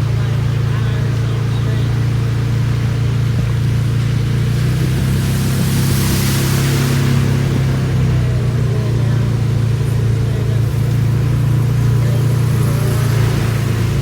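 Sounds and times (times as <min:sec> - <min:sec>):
car engine and tyres rumbling: 0:00.0 - 0:14.0.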